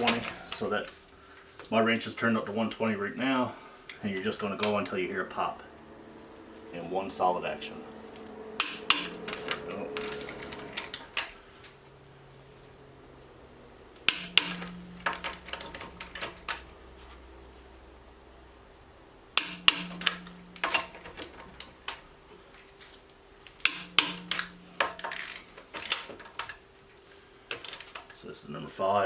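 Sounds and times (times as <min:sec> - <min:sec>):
metal clicks and clatter: 0:00.0 - 0:00.7, 0:08.6 - 0:11.4, 0:14.0 - 0:16.7, 0:19.4 - 0:22.0, 0:23.5 - 0:26.6, 0:27.5 - 0:28.2
torque wrench click: 0:08.6 - 0:11.3, 0:14.0 - 0:16.6, 0:19.4 - 0:22.0, 0:23.6 - 0:26.6, 0:27.5 - 0:28.1.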